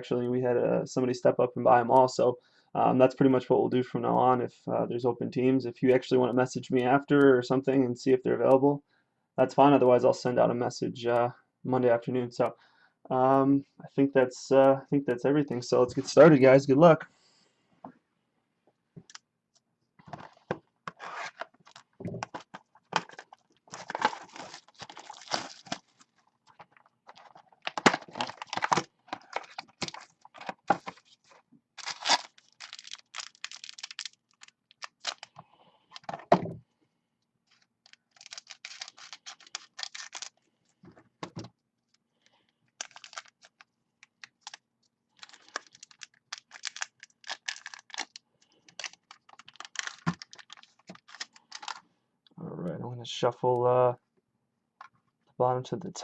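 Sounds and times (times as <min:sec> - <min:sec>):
packaging tearing and crinkling: 0:20.3 - 0:35.3, 0:37.5 - 0:40.4, 0:42.8 - 0:43.6, 0:44.2 - 0:44.6, 0:45.2 - 0:51.8.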